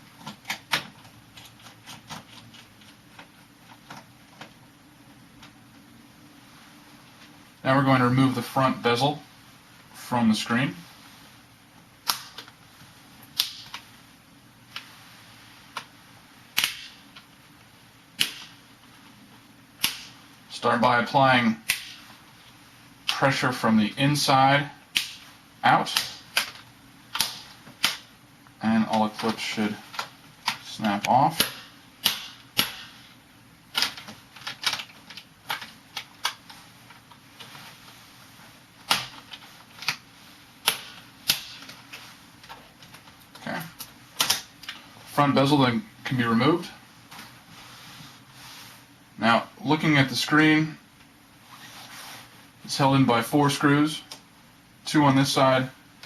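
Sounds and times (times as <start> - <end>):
plastic clips snapping: 44.2 - 44.8.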